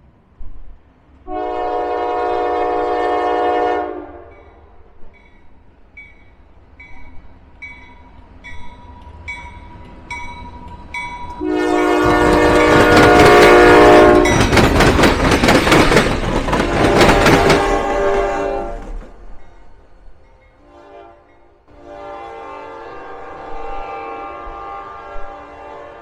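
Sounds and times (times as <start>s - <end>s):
passing train rumble and clatter: 0.0s - 26.0s
locomotive horn blast: 1.3s - 4.4s, 11.4s - 14.5s, 16.5s - 19.0s, 20.6s - 26.0s.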